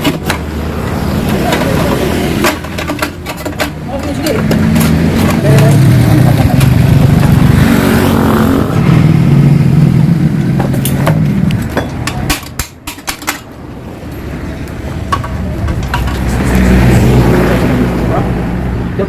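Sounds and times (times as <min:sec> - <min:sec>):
exhaust cracks: 0:00.0 - 0:13.5
motorcycle engine revving: 0:04.2 - 0:11.8.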